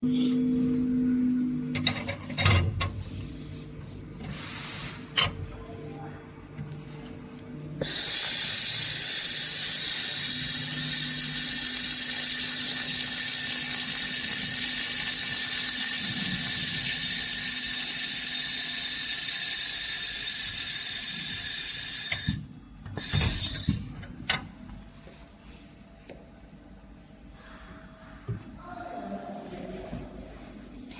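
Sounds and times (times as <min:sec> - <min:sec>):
laser welder hiss: 0:07.8 - 0:22.4.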